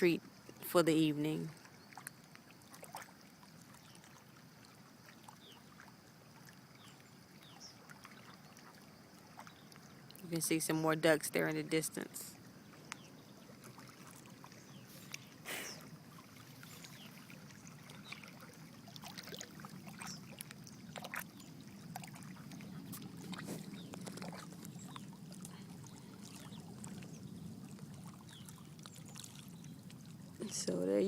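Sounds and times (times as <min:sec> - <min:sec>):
lake water lapping: 0:00.0 - 0:31.0
small splashes and ticks: 0:00.0 - 0:31.0.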